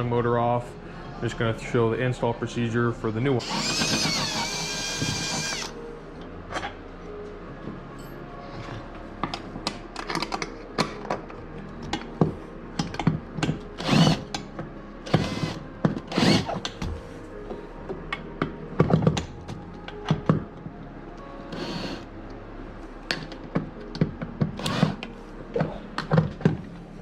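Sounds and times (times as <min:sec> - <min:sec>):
cordless drill bursts: 0:03.4 - 0:05.7, 0:13.8 - 0:14.2, 0:15.1 - 0:16.6, 0:21.5 - 0:22.0, 0:24.6 - 0:25.0.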